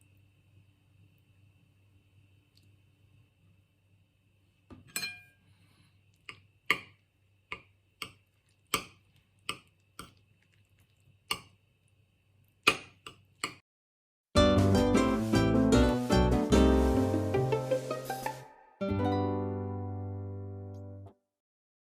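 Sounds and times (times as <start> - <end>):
tableware clinking: 4.8 - 5.4.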